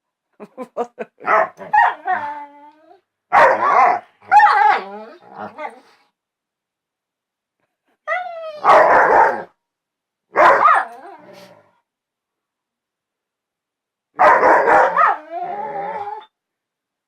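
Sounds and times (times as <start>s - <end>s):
dog bark-like calls: 3.3s - 4.8s, 10.4s - 10.9s, 14.2s - 15.2s
dogs howling grumble: 4.3s - 5.9s, 14.5s - 16.3s.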